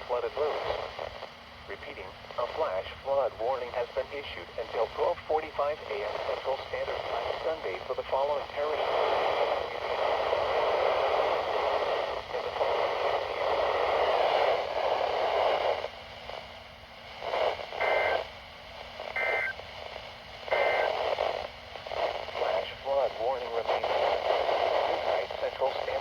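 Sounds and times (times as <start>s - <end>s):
radio receiver hiss: 0.0s - 26.0s
two-tone data bursts: 17.8s - 18.3s, 19.1s - 19.6s, 20.5s - 21.0s.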